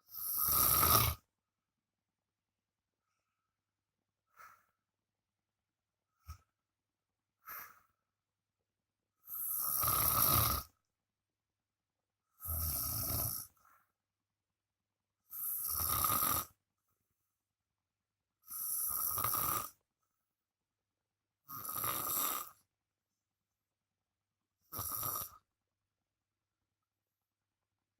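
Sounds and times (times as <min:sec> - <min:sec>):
man snoring loudly: 0:00.1 - 0:01.3, 0:09.3 - 0:10.7, 0:12.4 - 0:13.6, 0:15.3 - 0:16.6, 0:18.5 - 0:19.8, 0:21.5 - 0:22.6, 0:24.7 - 0:25.4.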